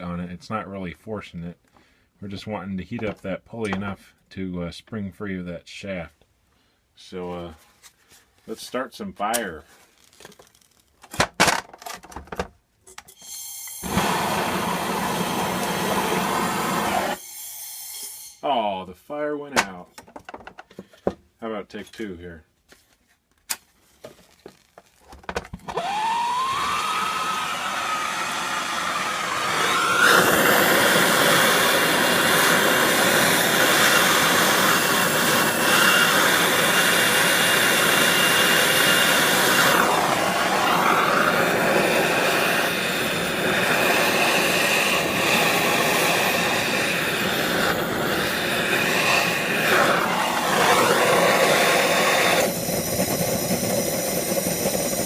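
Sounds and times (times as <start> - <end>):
gas torch hissing: 13.1 - 18.5, 25.8 - 55.0
gas torch igniter clicks: 13.6 - 17.2.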